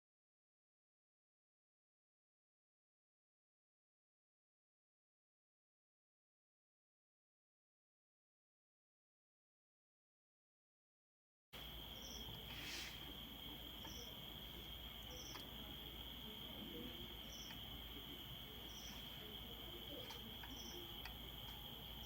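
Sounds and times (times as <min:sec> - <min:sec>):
crickets trilling: 0:11.6 - 0:22.0
insect chirps: 0:11.6 - 0:22.0
faint clicks: 0:15.1 - 0:16.1, 0:17.0 - 0:17.8, 0:18.6 - 0:21.8.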